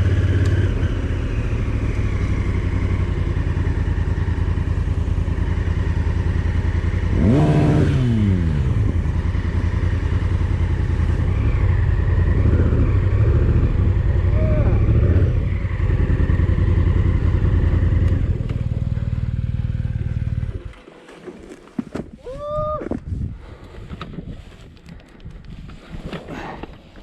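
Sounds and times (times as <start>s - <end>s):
off-road vehicle engine running: 0.0s - 20.8s.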